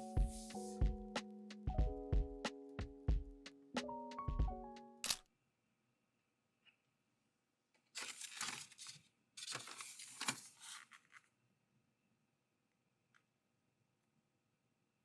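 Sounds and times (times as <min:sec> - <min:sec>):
background music: 0:00.0 - 0:05.2
crinkly rustling: 0:08.0 - 0:11.3.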